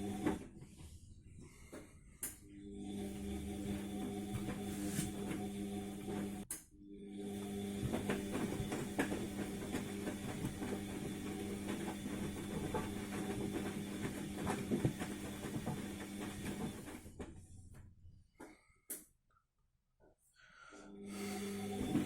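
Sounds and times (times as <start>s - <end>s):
washing machine motor humming: 0.0s - 18.1s, 20.9s - 22.0s
laundry tumbling with soft knocks: 7.7s - 17.8s.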